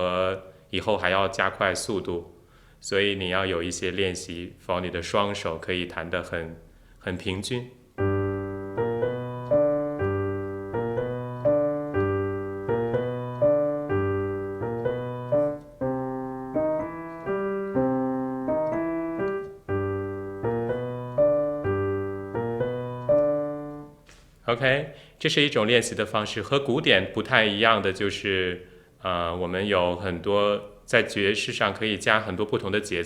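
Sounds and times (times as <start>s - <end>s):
blues piano: 7.9s - 24.1s.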